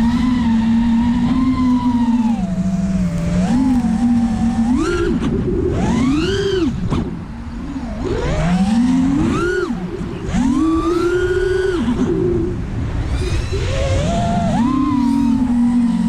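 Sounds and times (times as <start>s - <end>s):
quadcopter motors whining: 0.0s - 16.0s.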